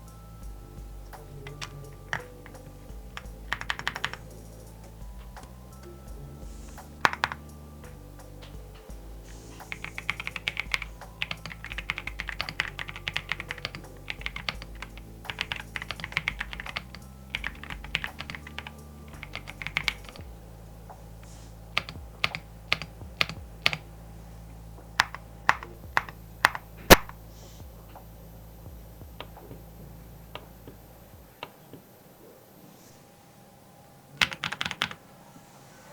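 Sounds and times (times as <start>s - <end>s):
mechanical keyboard typing: 1.4s - 4.3s, 7.0s - 7.4s, 9.7s - 20.2s, 21.8s - 23.8s, 25.0s - 27.1s, 34.2s - 35.0s.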